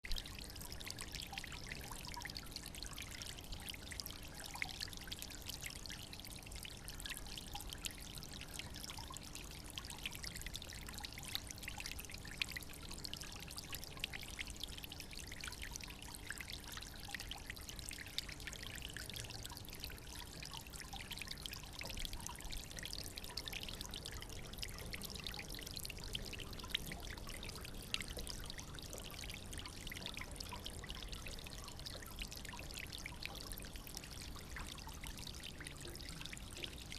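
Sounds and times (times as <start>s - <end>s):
stream trickling over stones: 0.0s - 36.9s.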